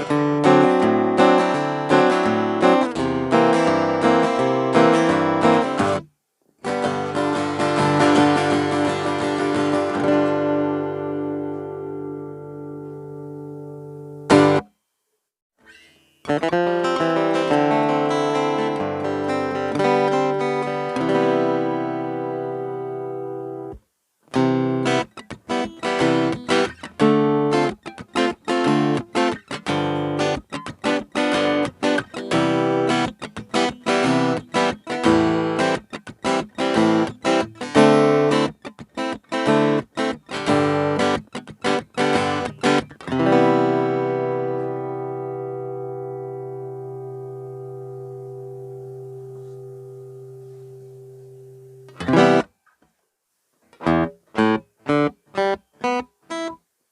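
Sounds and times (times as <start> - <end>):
acoustic guitar playing: 0.0 - 14.8, 15.6 - 52.8, 53.6 - 56.7.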